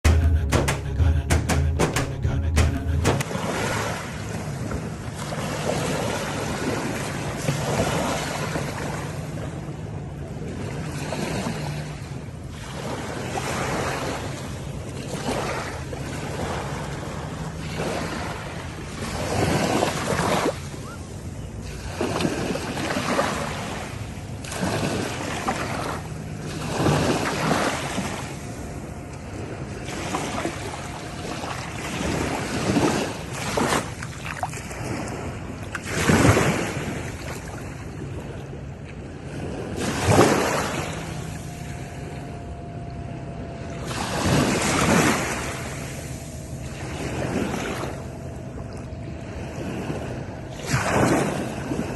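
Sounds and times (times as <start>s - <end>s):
low steady hum: 0.0s - 7.6s, 36.7s - 51.9s
ocean waves breaking: 0.0s - 51.9s.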